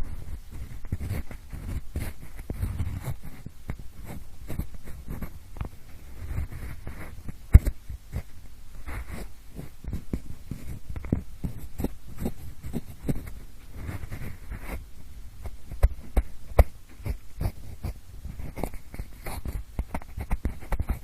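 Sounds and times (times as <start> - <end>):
pencil scratching: 0.0 - 5.4, 6.2 - 14.8, 15.4 - 21.0
pencil tapping: 9.9 - 13.4, 15.4 - 21.0.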